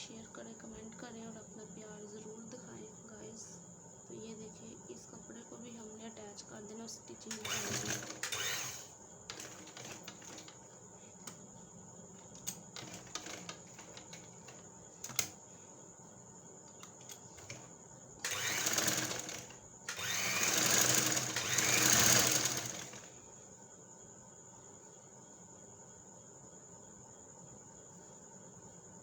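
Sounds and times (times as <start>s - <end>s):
sewing machine stitching: 7.3s - 10.5s, 12.8s - 15.3s, 17.4s - 23.1s.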